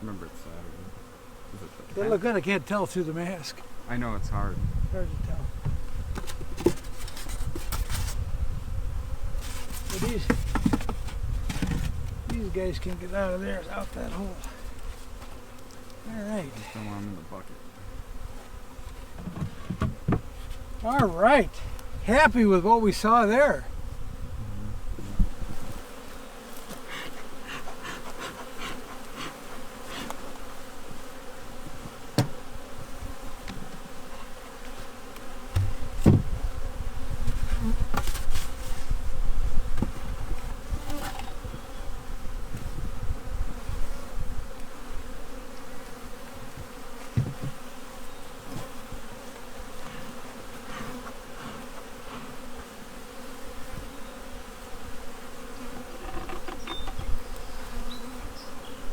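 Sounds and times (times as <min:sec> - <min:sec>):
bees buzzing: 0:00.0 - 0:58.9
sharp knocks: 0:32.2 - 0:32.4.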